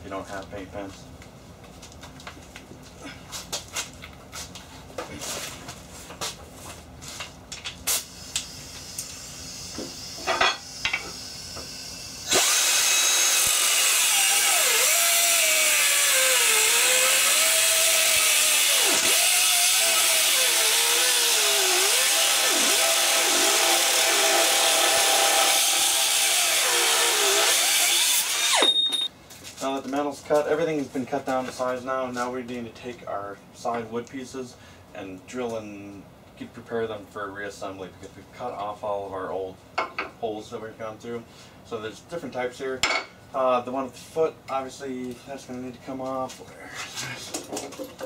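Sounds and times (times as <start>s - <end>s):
power tool cutting metal: 8.4s - 28.9s.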